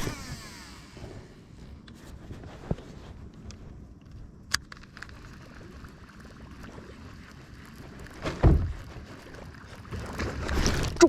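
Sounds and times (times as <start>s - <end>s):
wind: 0.0s - 11.0s
water lapping: 4.8s - 11.0s.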